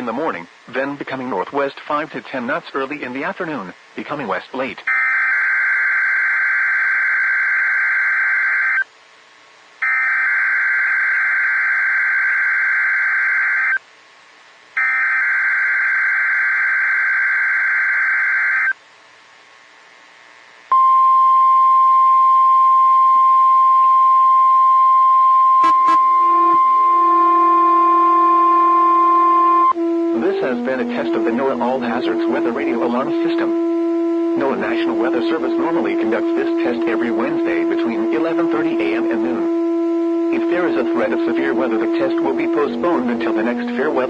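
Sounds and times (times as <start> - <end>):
warning alarm tone: 4.9 - 8.8, 9.8 - 13.8, 14.8 - 18.8, 20.7 - 44.0
lower second tone: 20.7 - 44.0.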